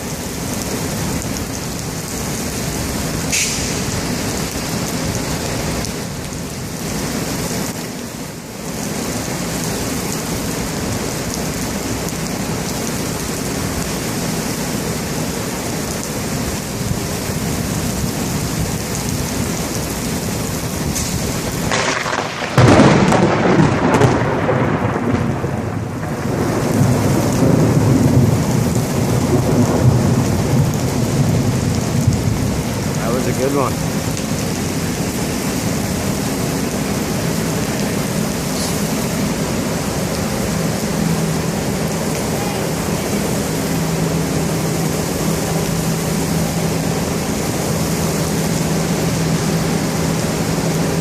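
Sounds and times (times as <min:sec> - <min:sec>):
heavy rain pouring: 0:00.0 - 0:51.0
thunderclap and rumbling thunder: 0:20.4 - 0:34.5.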